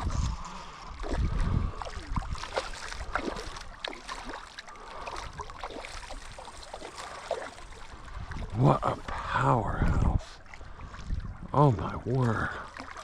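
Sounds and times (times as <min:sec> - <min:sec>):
wind rumble on microphone: 0:00.0 - 0:03.6, 0:07.9 - 0:12.6
creek water babbling: 0:00.0 - 0:13.0.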